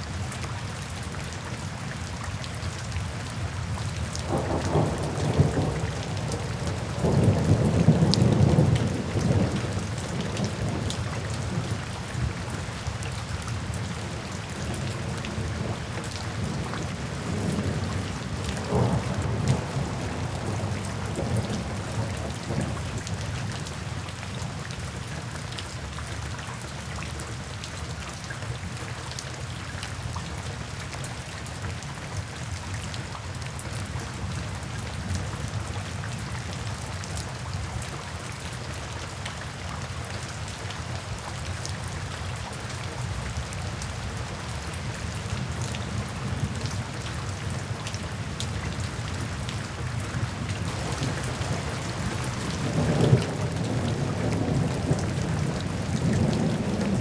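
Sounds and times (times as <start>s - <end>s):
steady rain falling: 0.0s - 57.0s
thunder rumbling: 4.2s - 13.0s, 15.0s - 22.8s, 48.1s - 57.0s.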